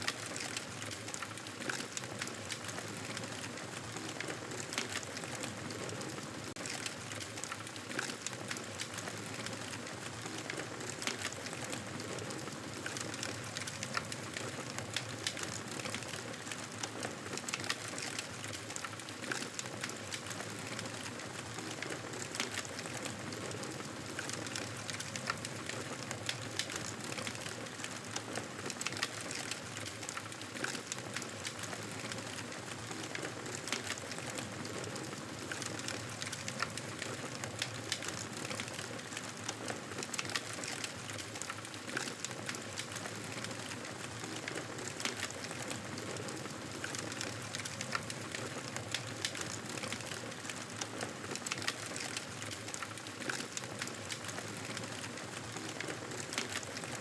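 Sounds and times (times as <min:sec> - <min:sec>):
burning wood crackling: 0:28.7 - 0:57.0.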